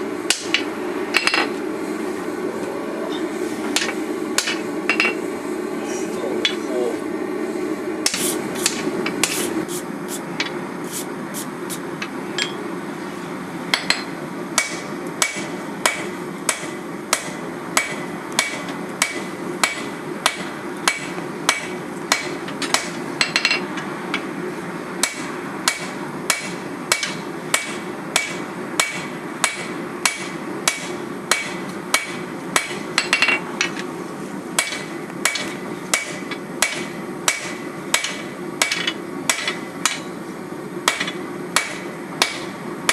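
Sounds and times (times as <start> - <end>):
hammer striking metal on anvil: 0.3 - 1.5, 3.8 - 5.2, 13.7 - 23.6, 25.0 - 33.8, 34.6 - 40.1, 40.8 - 42.9.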